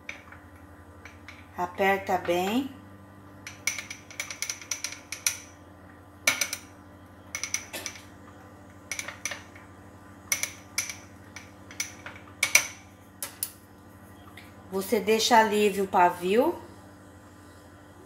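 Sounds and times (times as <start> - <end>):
utensil clinking against small dish: 3.5 - 5.6, 7.3 - 8.2, 8.9 - 9.6.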